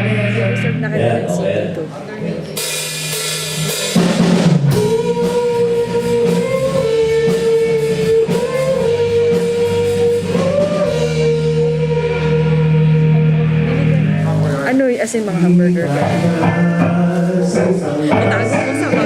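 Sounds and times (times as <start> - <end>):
amplified guitar note bending: 0.0 - 4.0, 11.1 - 14.7.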